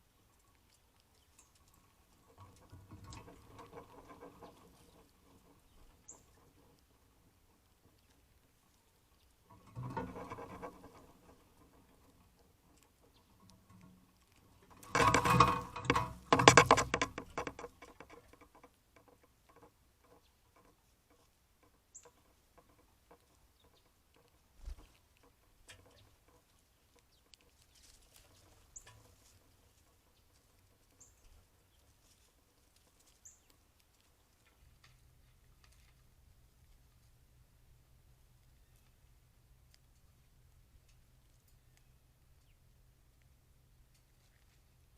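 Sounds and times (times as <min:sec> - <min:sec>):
rapid patter: 0:14.8 - 0:33.2.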